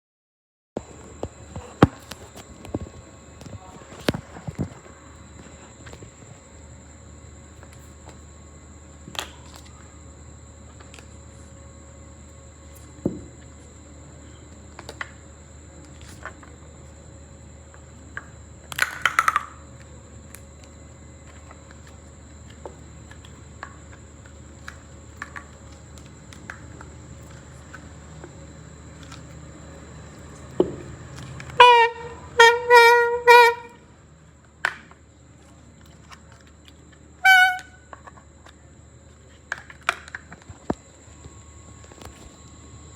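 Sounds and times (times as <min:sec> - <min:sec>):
buzzy horn toots: 0:31.6 - 0:33.8, 0:37.2 - 0:37.9.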